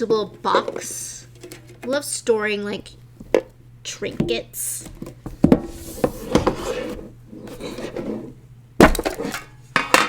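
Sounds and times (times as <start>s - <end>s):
cardboard scraping and rustling: 5.3s - 9.4s.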